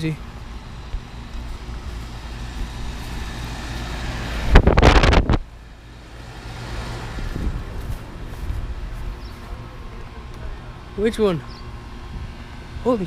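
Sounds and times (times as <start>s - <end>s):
air conditioner units humming: 0.0s - 13.0s
loud rush of noise: 1.1s - 5.6s.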